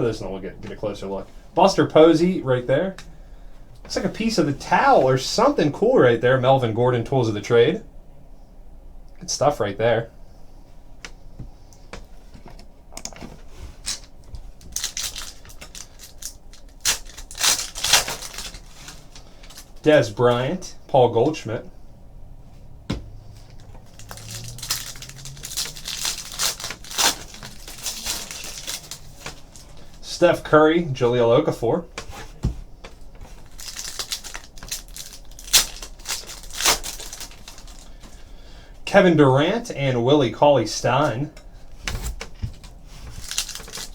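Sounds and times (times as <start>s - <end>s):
card wrappers crinkling and tearing: 13.8s - 20.0s, 23.4s - 30.1s, 33.0s - 38.2s, 42.0s - 43.9s
small clicks and rustles: 23.4s - 29.9s, 42.0s - 43.9s.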